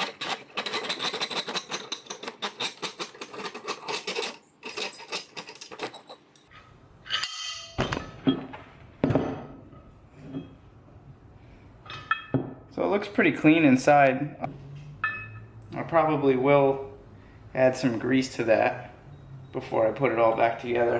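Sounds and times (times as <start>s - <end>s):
metal parts knocking and clinking: 0.0s - 6.5s, 7.1s - 9.6s.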